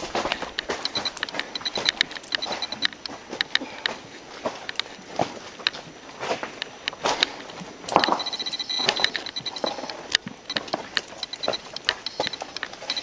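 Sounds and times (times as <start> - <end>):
footsteps on rough trail: 0.0 - 13.0
rapid high chirps: 0.8 - 3.0, 8.2 - 9.9, 10.5 - 13.0.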